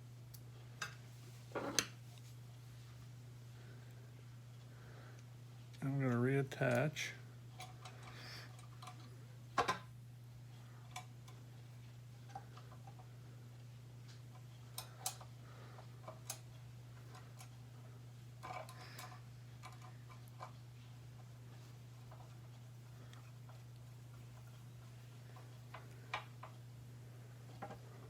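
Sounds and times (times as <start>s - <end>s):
steady low hum: 0.0s - 28.0s
small metal parts clicking: 18.4s - 20.6s.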